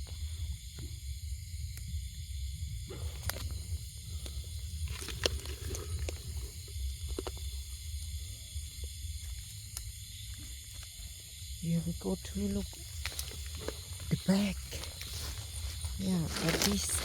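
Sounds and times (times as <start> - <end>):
low rumble: 0.0 - 17.0
plants rustling: 12.2 - 17.0.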